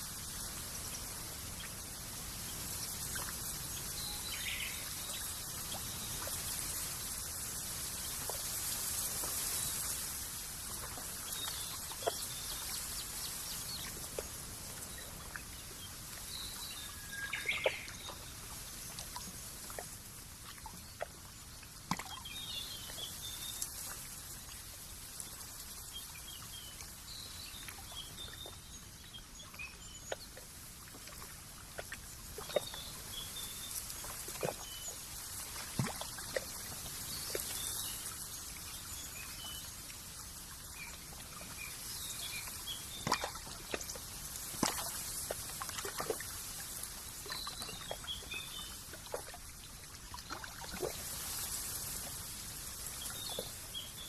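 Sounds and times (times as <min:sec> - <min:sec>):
soft steady hiss: 0:00.0 - 0:54.0
water trickling and dripping: 0:00.0 - 0:54.0
small birds twittering: 0:10.8 - 0:19.4.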